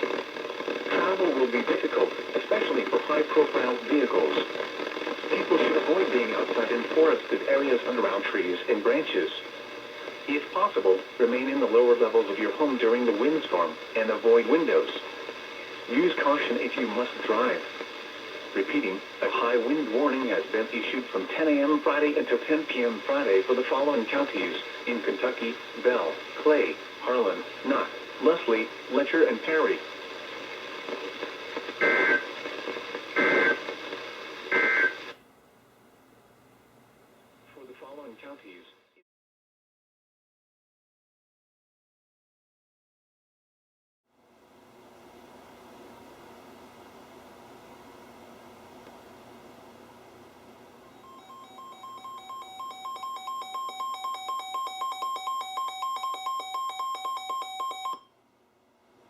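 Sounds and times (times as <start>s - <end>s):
radio broadcast hiss: 0.0s - 35.3s, 36.1s - 39.0s
two-tone rapid alarm beeping: 51.0s - 58.1s.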